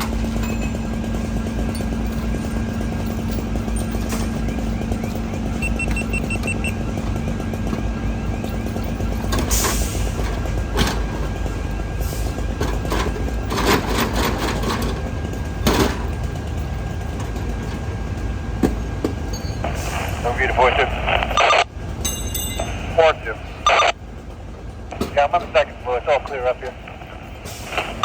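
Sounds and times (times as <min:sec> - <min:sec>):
fire truck engines idling: 0:00.0 - 0:28.0
quick high beeps: 0:05.6 - 0:06.8.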